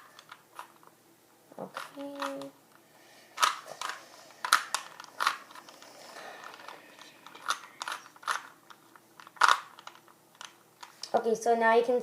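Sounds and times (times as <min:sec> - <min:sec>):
puzzle cube plastic clicks: 0:01.7 - 0:02.6, 0:03.4 - 0:11.2.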